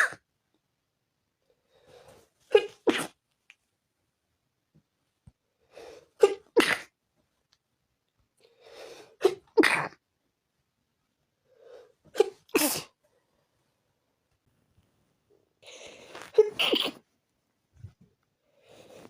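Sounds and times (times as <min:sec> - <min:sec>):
person sneezing: 0:02.5 - 0:03.2, 0:06.2 - 0:07.0, 0:12.1 - 0:13.0, 0:15.7 - 0:17.0.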